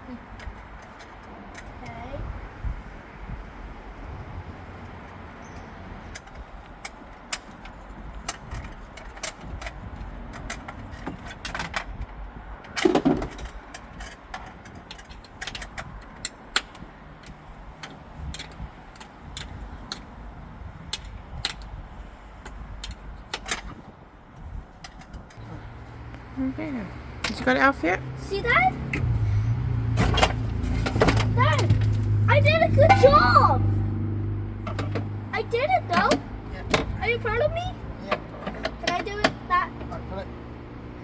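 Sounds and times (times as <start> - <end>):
hand tools clicking and knocking: 6.1 - 12.0, 12.6 - 20.2, 20.9 - 21.8, 22.4 - 25.4.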